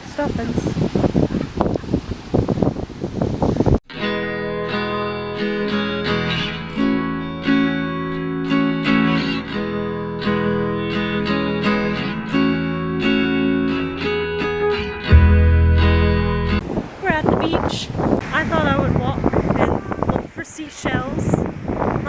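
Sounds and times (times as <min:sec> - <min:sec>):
acoustic guitar picked and strummed: 0:03.9 - 0:16.6
loud low bass note: 0:15.1 - 0:16.6.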